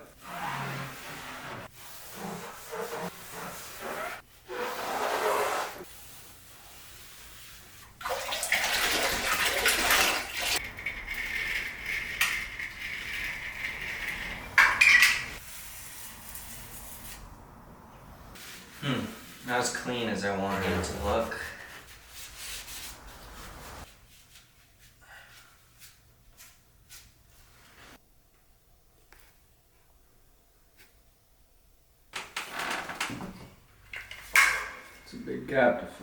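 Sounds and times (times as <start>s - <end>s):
water running and splashing: 7.9s - 11.9s.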